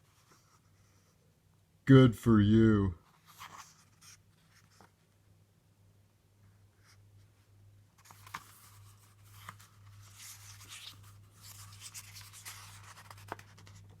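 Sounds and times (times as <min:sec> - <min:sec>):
faint rustling and scratching: 0:00.0 - 0:01.3, 0:03.0 - 0:05.2, 0:06.4 - 0:14.0.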